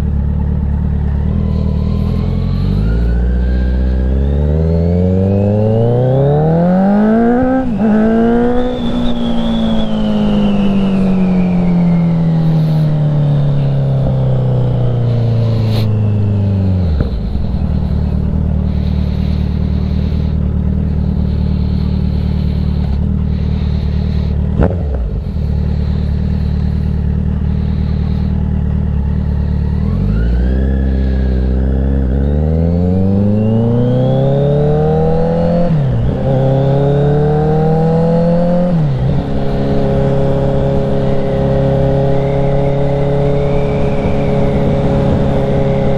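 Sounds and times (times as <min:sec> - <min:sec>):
motorcycle engine idling: 0:00.0 - 0:32.8
motorcycle accelerating through gears: 0:00.0 - 0:45.9.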